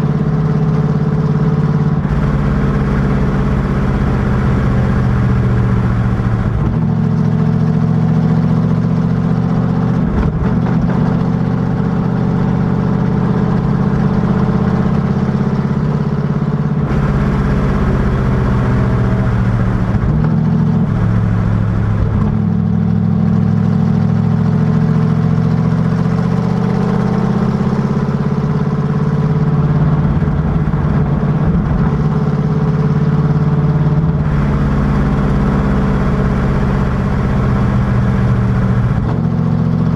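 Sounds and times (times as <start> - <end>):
race car engine running hard: 0.0 - 39.9.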